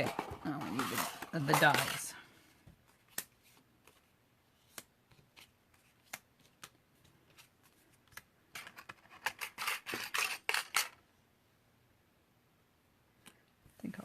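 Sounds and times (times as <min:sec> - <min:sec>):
crisp rustling and scraping: 0:00.0 - 0:02.2.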